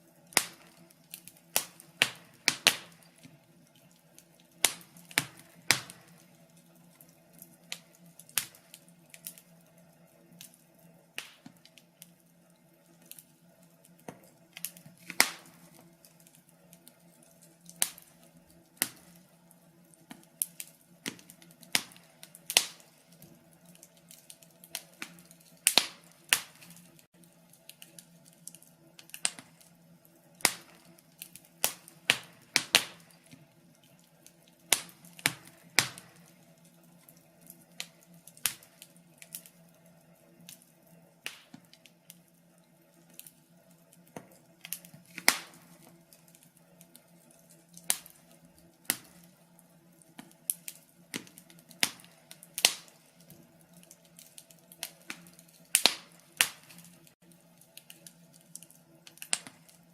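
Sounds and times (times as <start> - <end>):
faint steady hum: 0.0 - 59.9
wood fire crackling: 0.0 - 59.9.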